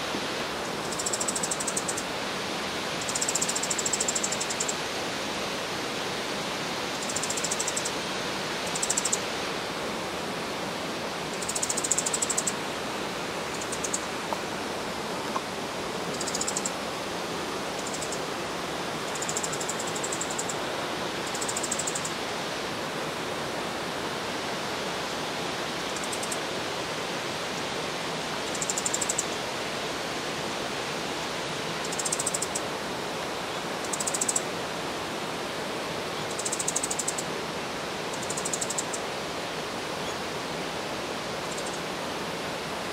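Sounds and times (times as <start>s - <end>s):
songbird high-pitched ticking calls: 0.8s - 2.0s, 3.0s - 4.8s, 6.9s - 7.9s, 8.6s - 9.2s, 11.4s - 12.6s, 13.5s - 14.4s, 16.1s - 16.7s, 17.8s - 18.2s, 19.1s - 20.6s, 21.2s - 22.1s, 28.5s - 29.4s, 31.8s - 32.6s, 33.8s - 34.4s, 36.2s - 37.2s, 38.1s - 39.0s, 41.5s - 41.8s.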